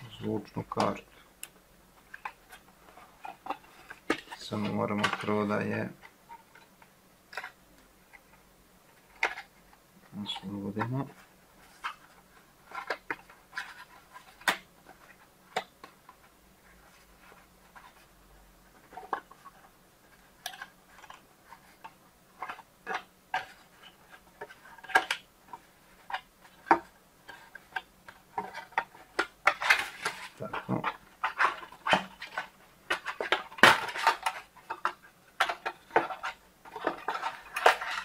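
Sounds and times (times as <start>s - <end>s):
packaging clicks and rustles: 20.2s - 38.0s.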